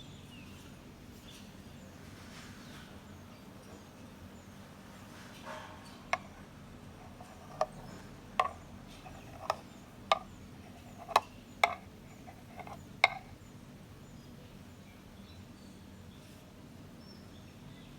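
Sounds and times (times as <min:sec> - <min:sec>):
hard objects clinking together: 0:08.4 - 0:13.3.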